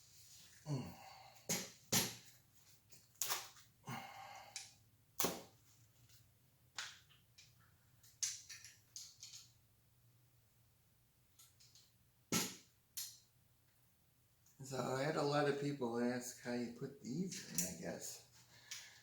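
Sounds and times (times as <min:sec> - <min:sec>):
metal bicycle parts clicking: 0:08.2 - 0:09.5.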